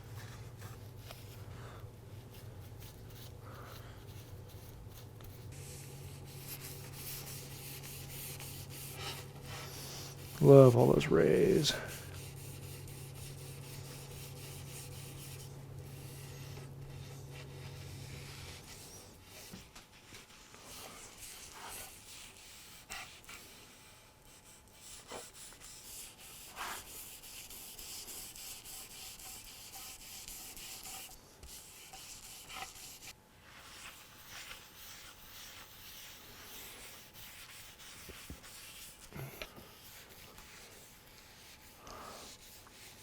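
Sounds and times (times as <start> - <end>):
hand rubbing wood: 0.0 - 23.8.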